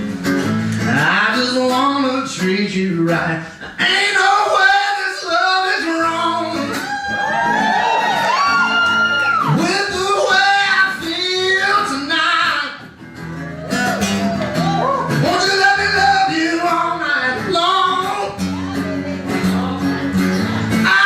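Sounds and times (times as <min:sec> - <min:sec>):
acoustic guitar: 0:00.0 - 0:21.0
man singing: 0:00.6 - 0:07.0, 0:09.4 - 0:13.0, 0:13.7 - 0:21.0.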